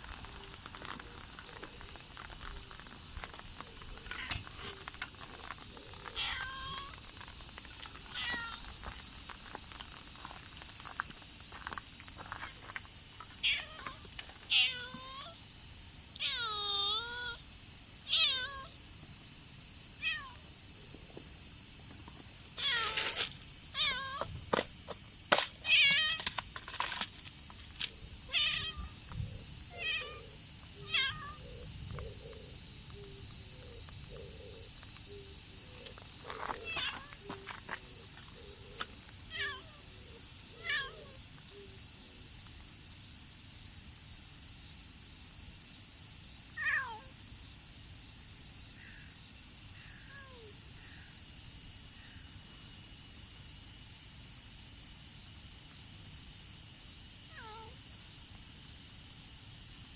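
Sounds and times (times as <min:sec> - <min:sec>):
cat meowing: 0:04.1 - 0:04.4, 0:06.1 - 0:07.0, 0:08.1 - 0:08.7, 0:13.4 - 0:15.4, 0:16.2 - 0:17.4, 0:18.1 - 0:18.7, 0:20.0 - 0:20.4, 0:22.6 - 0:23.2, 0:23.8 - 0:24.3, 0:28.3 - 0:28.9, 0:29.7 - 0:31.4, 0:36.6 - 0:37.1, 0:39.3 - 0:39.8, 0:40.6 - 0:41.2, 0:46.6 - 0:47.1, 0:50.0 - 0:50.5, 0:57.3 - 0:57.8.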